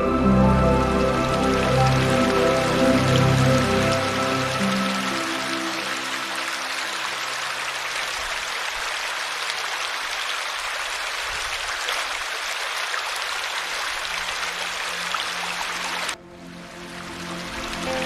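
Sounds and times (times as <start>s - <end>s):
soft low music tone: 0.0s - 7.0s, 15.1s - 18.0s
stream water rushing: 0.0s - 18.0s.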